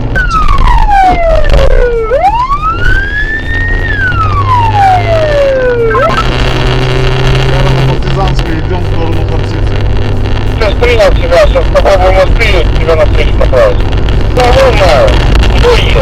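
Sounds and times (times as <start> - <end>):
siren chirps: 0.0 - 8.1
car engine drone: 0.0 - 16.0
police siren wailing: 0.0 - 16.0.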